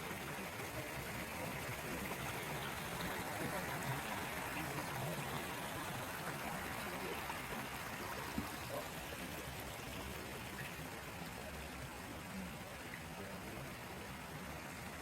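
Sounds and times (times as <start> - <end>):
running water rushing: 0.0 - 15.0.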